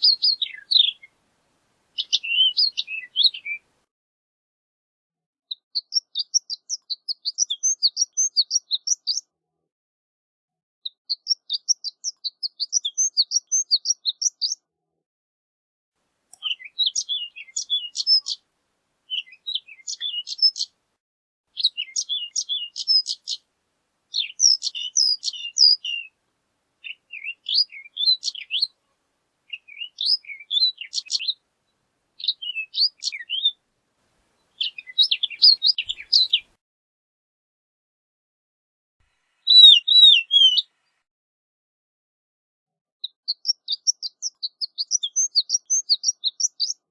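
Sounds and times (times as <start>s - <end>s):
lark twittering song: 0.0s - 1.2s, 2.0s - 3.7s, 5.5s - 9.3s, 10.8s - 14.6s, 16.3s - 18.4s, 19.1s - 20.8s, 21.5s - 23.4s, 24.1s - 26.2s, 26.8s - 28.8s, 29.5s - 33.6s, 34.4s - 36.6s, 39.4s - 41.0s, 43.0s - 46.9s.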